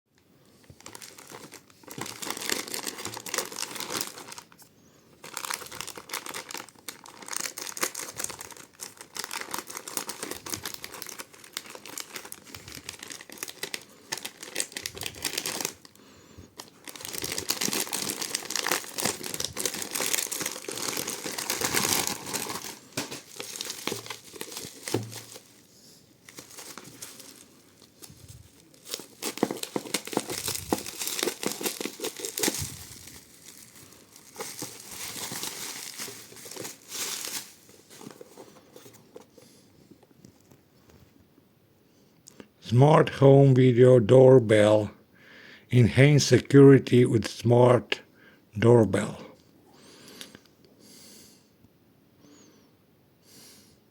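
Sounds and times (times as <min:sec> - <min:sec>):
packaging crackling: 0:00.7 - 0:04.6, 0:05.2 - 0:16.0, 0:16.6 - 0:39.4.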